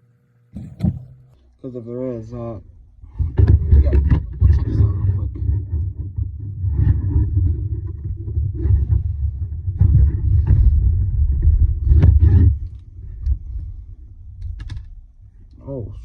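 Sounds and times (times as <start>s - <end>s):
low rumbling handling noise: 0.6s - 1.4s
sharp clicks and knocks: 0.6s - 1.4s.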